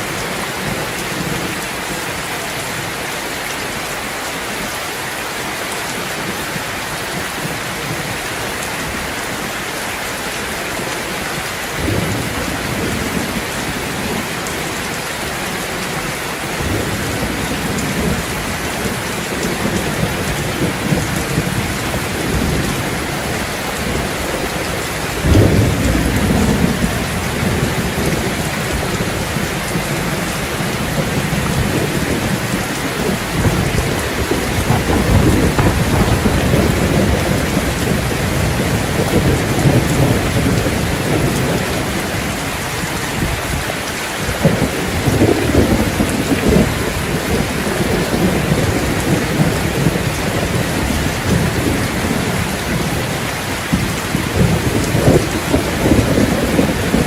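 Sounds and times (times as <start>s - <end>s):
heavy rain falling: 0.0s - 57.0s
rolling thunder: 24.8s - 42.4s, 44.3s - 53.1s, 53.7s - 57.0s.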